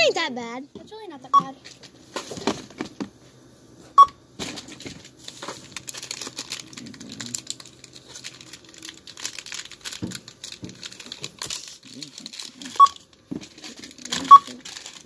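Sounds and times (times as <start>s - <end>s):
plastic bags crinkling and rustling: 4.4s - 15.0s.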